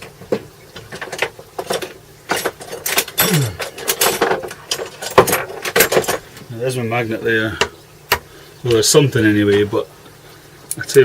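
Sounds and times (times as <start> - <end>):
metal tools clinking and rattling: 0.9 - 6.3.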